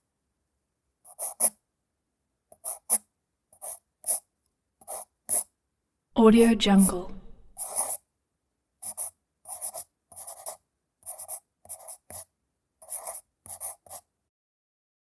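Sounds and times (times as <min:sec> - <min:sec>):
pencil scratching on paper: 0:01.1 - 0:01.6, 0:02.5 - 0:05.5, 0:06.8 - 0:08.1, 0:08.8 - 0:14.1.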